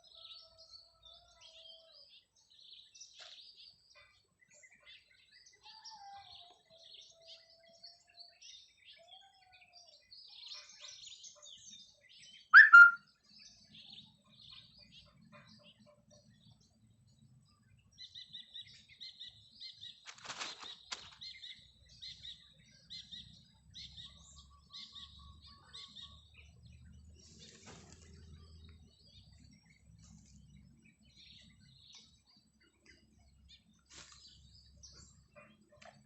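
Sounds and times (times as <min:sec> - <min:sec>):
birds chirping: 0:00.0 - 0:36.0
faint whistled notes: 0:12.6 - 0:13.0
sharp two-part sound: 0:12.6 - 0:13.0.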